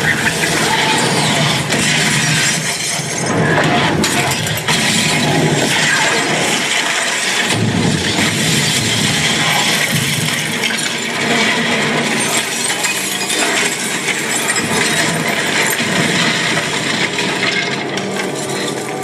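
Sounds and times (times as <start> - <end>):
explosion roar: 0.0 - 12.4
debris and glass breaking: 0.0 - 19.0.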